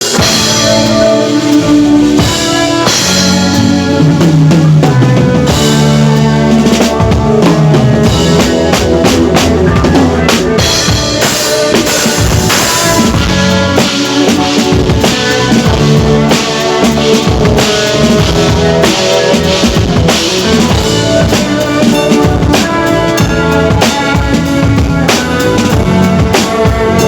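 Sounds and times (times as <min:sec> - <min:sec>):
drum kit groove: 0:00.0 - 0:27.0
music with bass and chords: 0:00.0 - 0:27.0.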